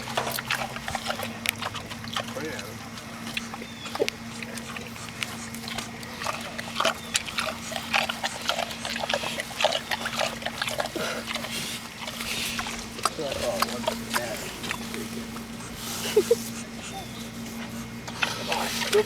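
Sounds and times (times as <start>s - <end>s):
pig chomping feed: 0.0s - 19.0s.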